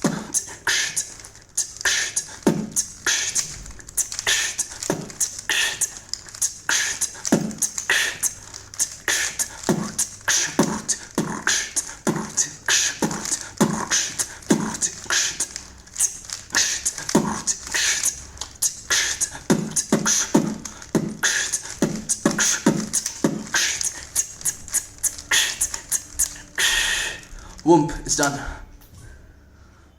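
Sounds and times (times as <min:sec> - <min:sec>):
person beatboxing: 0:00.0 - 0:28.7.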